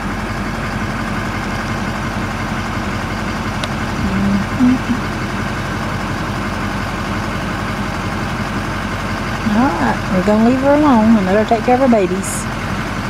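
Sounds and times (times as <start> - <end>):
vehicle engine idling: 0.0 - 13.0
short low hums: 3.6 - 6.2.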